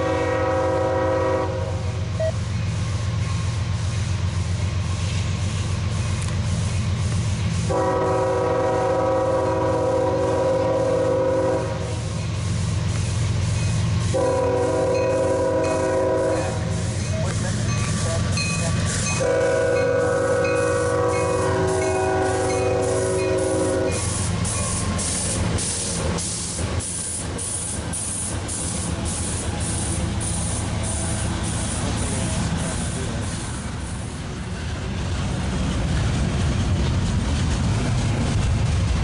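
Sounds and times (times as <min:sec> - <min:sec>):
train air horn blasts: 0:00.0 - 0:02.0, 0:07.7 - 0:12.1, 0:14.0 - 0:16.9, 0:19.2 - 0:24.9
locomotive engine rumble: 0:00.0 - 0:39.0.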